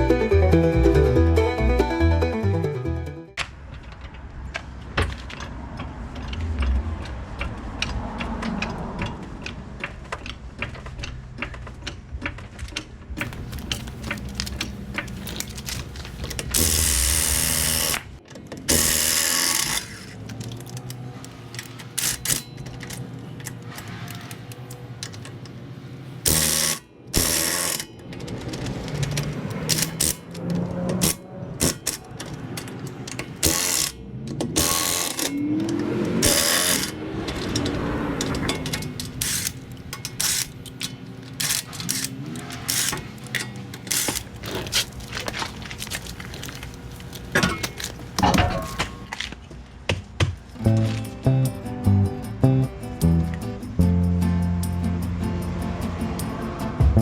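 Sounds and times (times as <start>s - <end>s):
ratchet wrench clicking: 13.2s - 25.3s, 26.2s - 45.0s.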